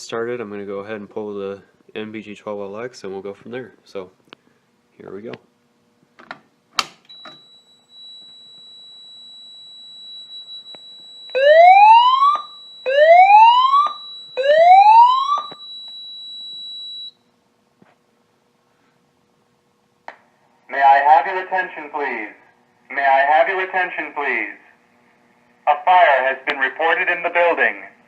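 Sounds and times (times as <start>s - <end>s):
pull station snap: 6.2s - 7.4s
fire alarm whoop tones: 7.1s - 17.2s.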